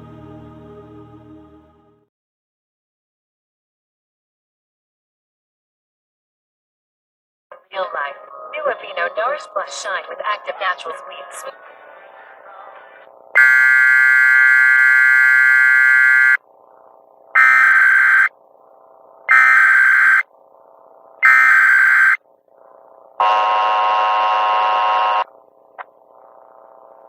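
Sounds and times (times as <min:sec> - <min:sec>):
harsh steady alert tone: 0:13.4 - 0:16.4, 0:17.4 - 0:18.3, 0:19.3 - 0:20.3, 0:21.2 - 0:22.2
screeching data bursts: 0:13.4 - 0:16.4, 0:17.3 - 0:18.4, 0:19.2 - 0:20.4, 0:21.1 - 0:22.3
two-tone attention signal: 0:13.4 - 0:16.4, 0:17.4 - 0:18.3, 0:19.3 - 0:20.2, 0:21.2 - 0:22.2.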